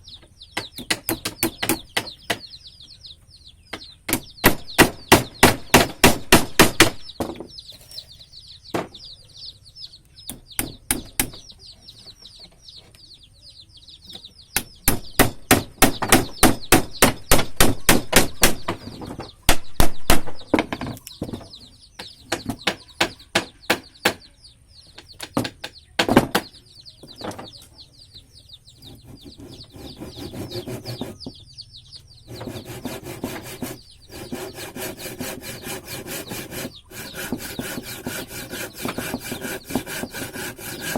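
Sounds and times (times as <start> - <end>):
hammer striking wood: 0.6 - 2.5, 3.7 - 7.4, 10.3 - 11.4, 14.6 - 18.9, 22.3 - 24.2, 32.3 - 40.9
hand saw cutting wood: 28.8 - 31.3, 32.3 - 40.9.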